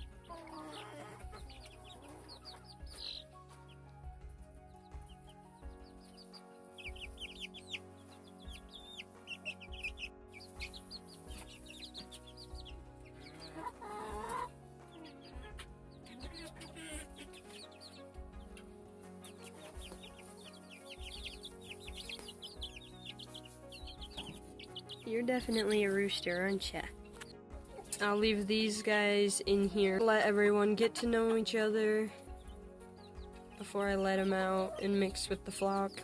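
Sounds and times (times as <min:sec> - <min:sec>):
chicks peeping: 0:00.0 - 0:03.7, 0:04.8 - 0:36.0
background music with held notes: 0:00.0 - 0:36.0.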